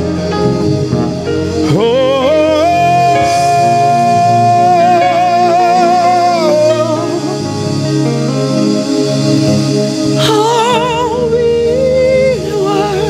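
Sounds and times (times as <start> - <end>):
sustained backing chords: 0.0 - 13.0
person singing long wordless note: 1.5 - 8.0, 10.2 - 13.0.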